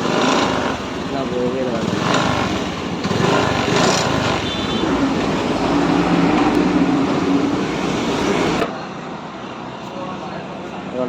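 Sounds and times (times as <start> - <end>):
scooter engine running: 0.0 - 8.7.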